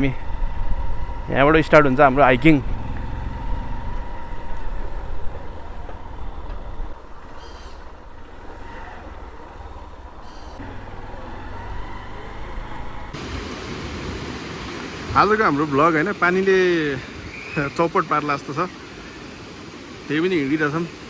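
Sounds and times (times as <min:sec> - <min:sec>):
vehicle engine rumbling: 0:10.0 - 0:21.0.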